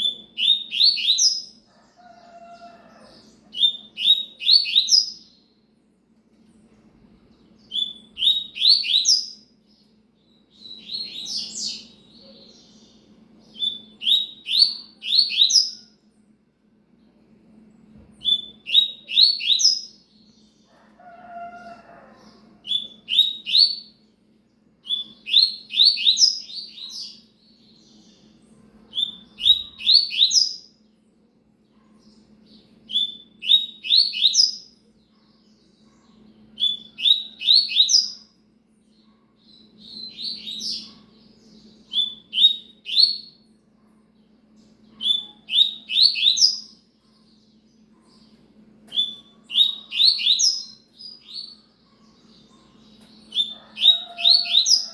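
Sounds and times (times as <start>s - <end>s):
bird singing high-pitched phrases: 0.0s - 1.6s, 3.2s - 5.5s, 7.6s - 9.4s, 10.2s - 15.8s, 18.2s - 20.5s, 22.7s - 24.0s, 24.8s - 30.7s, 31.8s - 38.3s, 38.9s - 43.5s, 44.8s - 54.9s.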